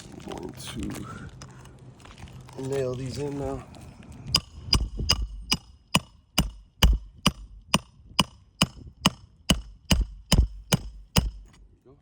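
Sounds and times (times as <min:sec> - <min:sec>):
hammer driving nails: 0:04.3 - 0:11.6.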